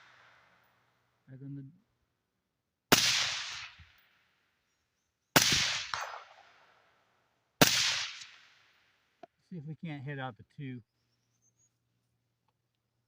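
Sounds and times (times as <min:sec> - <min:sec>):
suppressed rifle shots with echo: 0:02.9 - 0:04.2, 0:05.3 - 0:06.8, 0:07.6 - 0:08.8.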